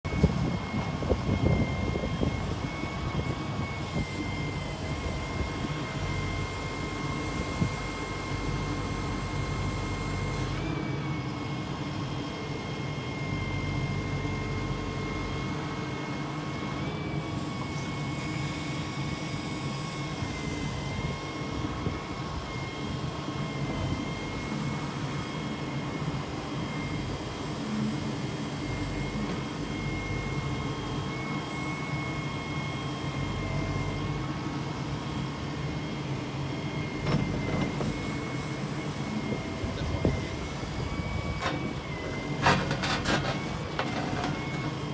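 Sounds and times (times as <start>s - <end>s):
excavator engine drone: 0.1s - 44.9s.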